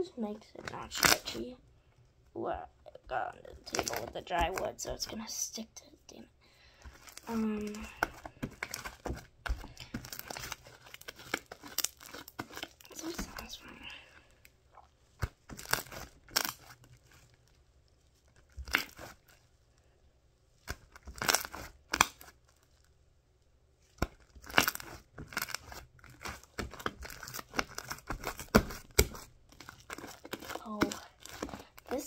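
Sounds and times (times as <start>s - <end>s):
slime squishing and popping: 0.6s - 1.4s, 6.9s - 13.5s, 14.7s - 17.4s, 18.3s - 19.4s, 20.6s - 22.5s, 23.9s - 32.0s.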